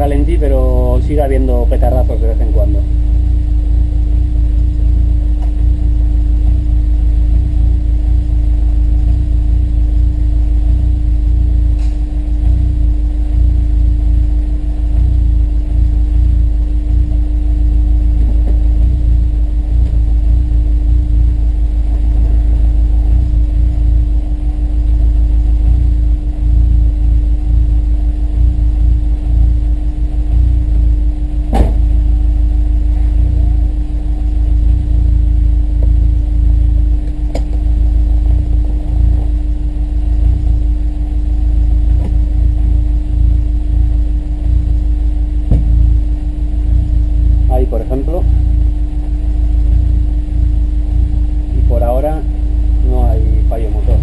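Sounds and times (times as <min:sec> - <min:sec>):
car engine idling: 0:00.0 - 0:54.0
engine misfire pop: 0:05.3 - 0:05.8, 0:11.6 - 0:12.7, 0:31.4 - 0:32.1, 0:37.0 - 0:37.7, 0:41.9 - 0:42.4, 0:45.4 - 0:46.1.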